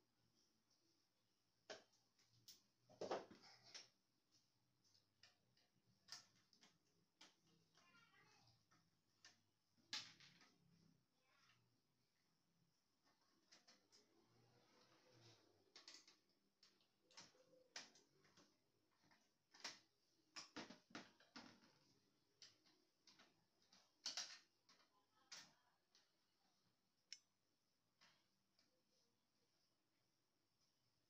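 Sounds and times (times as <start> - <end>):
small parts and tools clicking: 3.6 - 11.7, 13.0 - 26.2.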